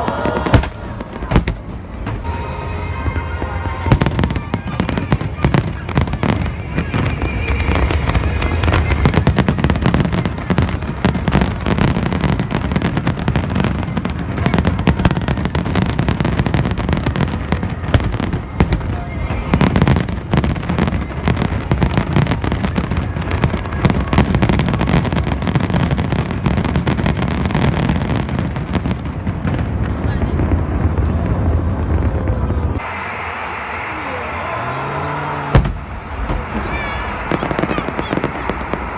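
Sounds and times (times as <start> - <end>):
fireworks crackling and popping: 0.0 - 2.4, 3.1 - 38.9
fireworks booms: 0.0 - 38.9
music: 1.9 - 5.6.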